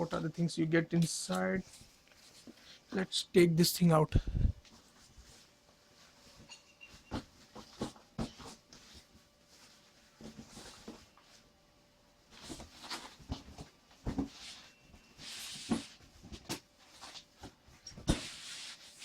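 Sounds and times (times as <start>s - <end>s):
cardboard and plastic rustling: 12.3s - 19.0s.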